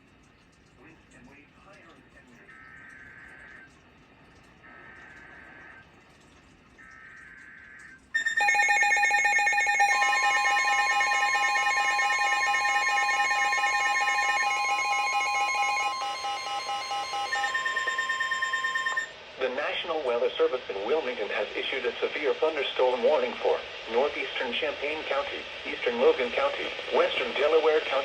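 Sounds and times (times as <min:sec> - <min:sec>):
steady warning alarm tone: 0:06.8 - 0:28.0
electronic alert tones: 0:08.2 - 0:19.2.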